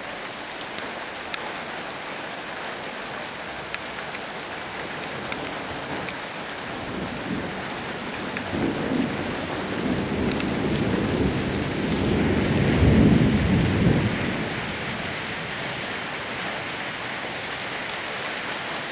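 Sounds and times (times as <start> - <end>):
rain falling: 0.0 - 18.9
thunder rolling: 6.8 - 15.9.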